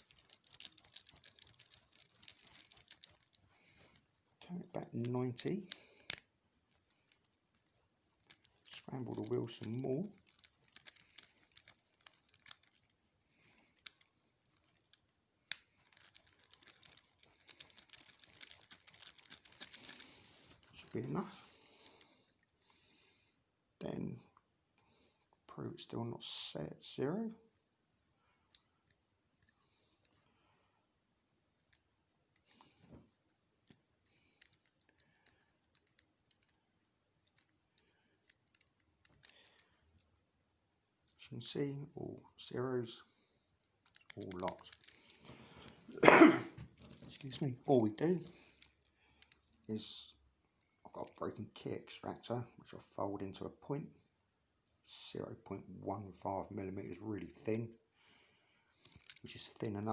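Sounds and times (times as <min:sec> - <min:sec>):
padlock number wheels clicking: 0:00.0 - 0:04.2, 0:05.1 - 0:22.4, 0:43.9 - 0:46.0, 0:58.8 - 0:59.3.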